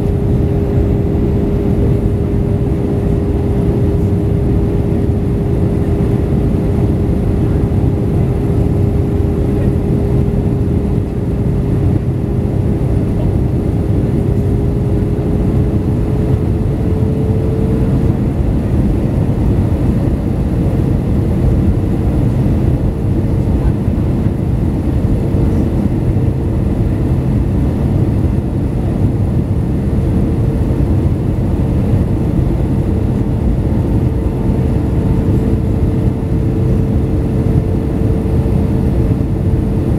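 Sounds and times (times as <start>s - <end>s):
droning engine hum: 0.0s - 39.9s.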